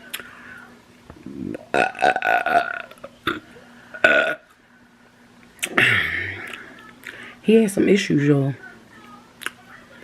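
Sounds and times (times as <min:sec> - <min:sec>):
person burping: 0:01.2 - 0:03.4, 0:04.0 - 0:04.5, 0:05.6 - 0:06.6.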